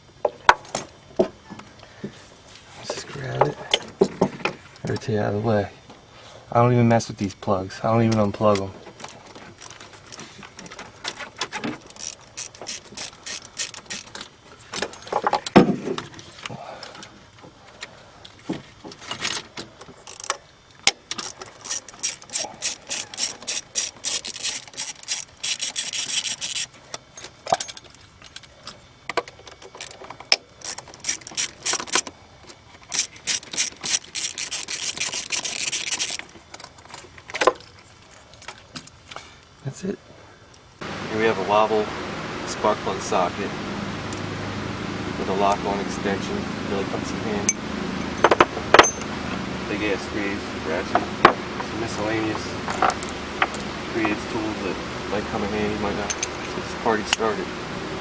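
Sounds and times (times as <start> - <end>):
knocks and rattles of parts: 8.0 - 39.3, 47.5 - 49.1, 50.8 - 54.4, 55.9 - 57.3
hand ratchet clicking: 11.8 - 14.3, 20.0 - 20.4, 21.1 - 27.8, 29.7 - 32.1, 32.8 - 36.8.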